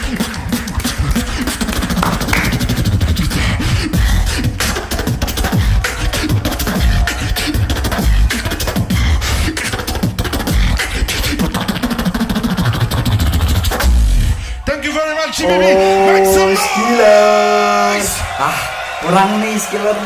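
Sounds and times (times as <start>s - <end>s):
beatboxing: 0.0s - 14.6s.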